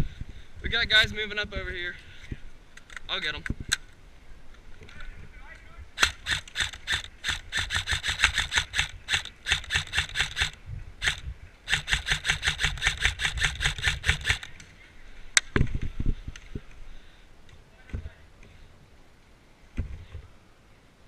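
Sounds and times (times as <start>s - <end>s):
airsoft rifle firing bursts: 6.0s - 14.5s.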